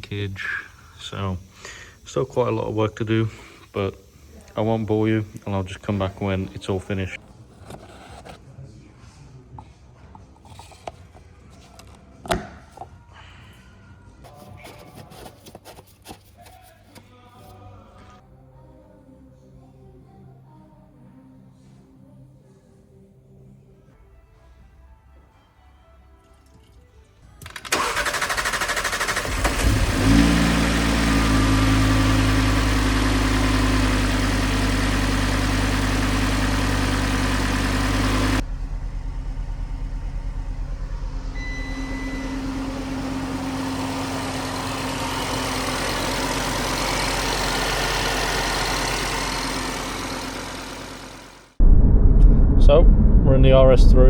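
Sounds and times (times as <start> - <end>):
starter cranking engine: 27.4 - 51.4
car engine running: 27.8 - 53.2.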